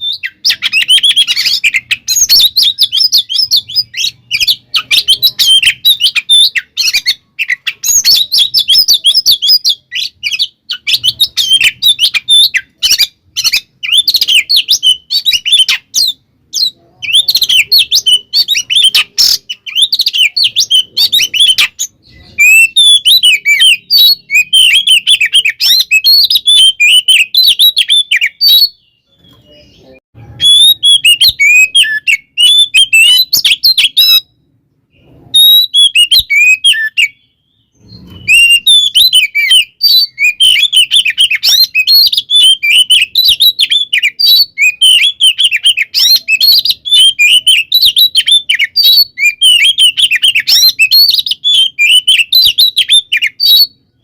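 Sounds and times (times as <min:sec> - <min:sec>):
bird singing chirps and whistles: 0:00.0 - 0:54.0.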